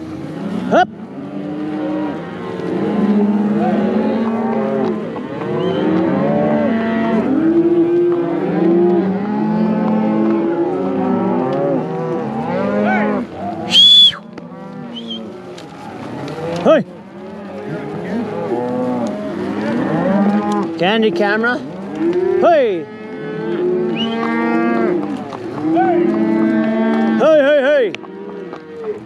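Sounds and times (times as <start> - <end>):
cattle mooing and bawling: 0.0 - 29.0
high-pitched cow call: 12.6 - 14.3, 14.9 - 15.4, 23.9 - 24.6.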